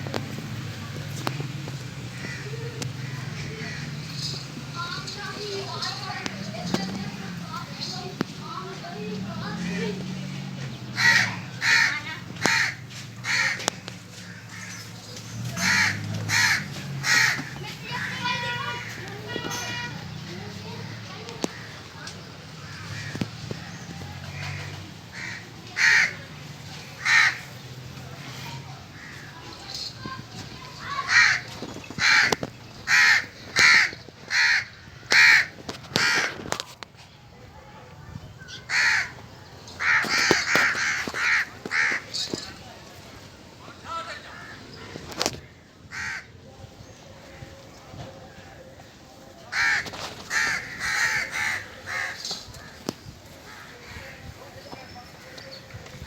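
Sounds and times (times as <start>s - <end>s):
crow cawing: 2.2s - 4.3s, 11.0s - 14.9s, 15.6s - 19.0s, 20.8s - 26.3s, 27.0s - 27.6s, 29.0s - 29.4s, 30.8s - 36.6s, 38.5s - 39.2s, 39.8s - 42.4s, 45.9s - 46.4s, 49.5s - 54.2s.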